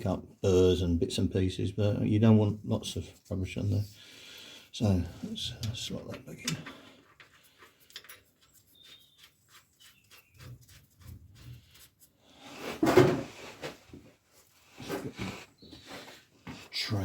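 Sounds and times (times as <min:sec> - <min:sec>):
small metal clicks: 0:07.6 - 0:08.4.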